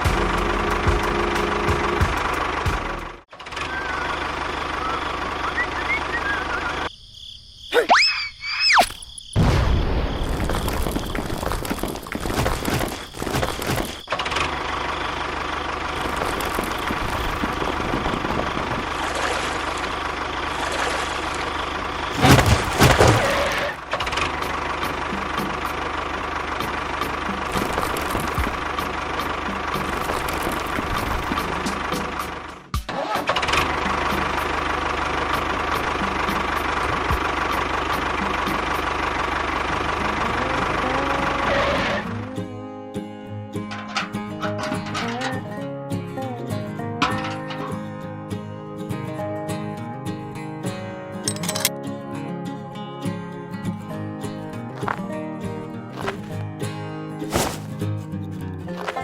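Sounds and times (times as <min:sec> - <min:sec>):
guitar music: 0:00.0 - 0:03.2, 0:39.7 - 0:59.0
small engine idling: 0:00.0 - 0:06.9, 0:10.7 - 0:45.6.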